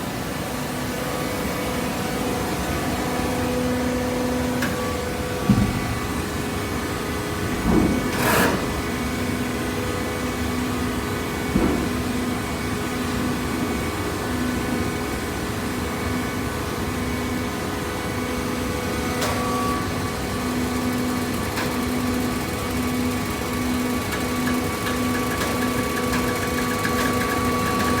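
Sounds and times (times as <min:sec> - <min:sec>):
baler motor and hydraulic pump: 0:07.4 - 0:09.5, 0:18.4 - 0:28.0.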